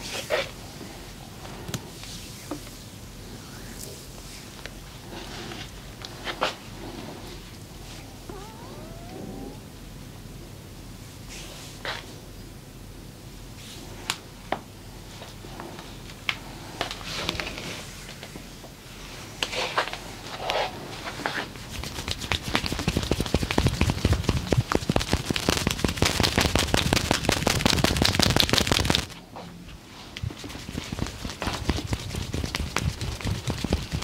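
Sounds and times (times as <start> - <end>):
rustling: 21.3 - 34.0
rapid hand tapping and slapping: 21.6 - 29.2, 30.2 - 34.0.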